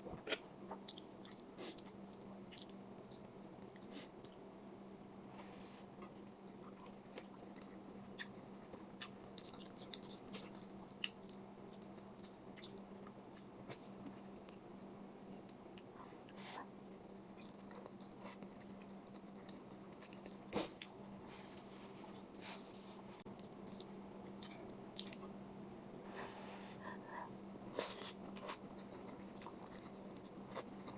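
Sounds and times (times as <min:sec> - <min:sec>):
faint low hum: 0:00.0 - 0:30.9
person chewing close up: 0:00.6 - 0:04.4, 0:06.0 - 0:14.6, 0:15.7 - 0:21.0, 0:23.3 - 0:25.3, 0:27.7 - 0:30.9.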